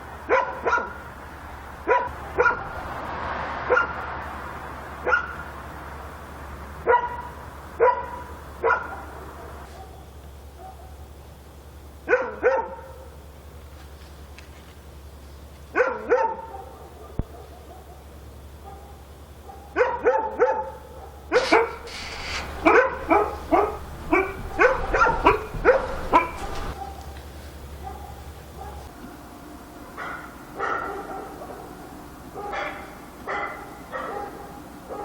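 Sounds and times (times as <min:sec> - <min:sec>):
dog barking: 0:00.3 - 0:01.1, 0:01.8 - 0:02.9, 0:03.7 - 0:04.0, 0:05.0 - 0:05.4, 0:06.8 - 0:11.0, 0:12.1 - 0:13.2, 0:15.7 - 0:27.2, 0:27.8 - 0:28.9, 0:30.0 - 0:35.0
steady low hum: 0:21.3 - 0:30.6.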